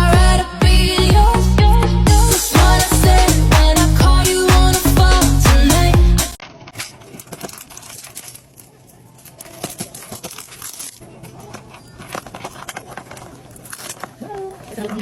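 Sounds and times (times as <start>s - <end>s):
plastic packaging crinkling and tearing: 6.4s - 15.0s.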